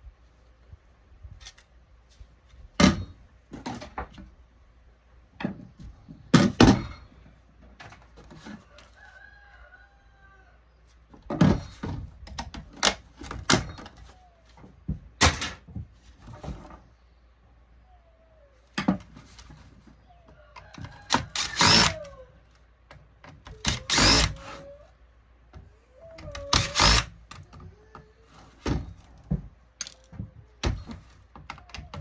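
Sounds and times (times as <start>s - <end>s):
faint rooster crowing: 8.4s - 11.0s, 19.6s - 22.7s
hand tools cracking and clicking: 29.8s - 30.2s.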